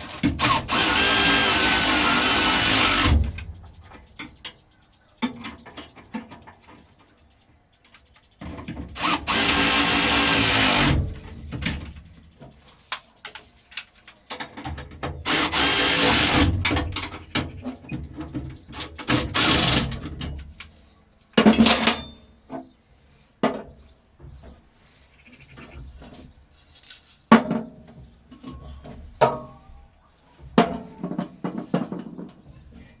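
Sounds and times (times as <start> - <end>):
noisy power tool bursts: 0.0 - 3.5, 8.9 - 11.2, 15.2 - 17.0, 19.0 - 20.0
metal tools knocking and clattering: 21.4 - 22.8, 25.6 - 29.6.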